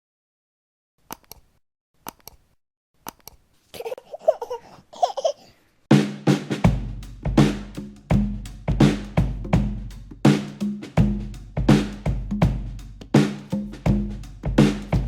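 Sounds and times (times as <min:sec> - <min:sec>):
drum-led beat with bass: 0:05.9 - 0:15.0.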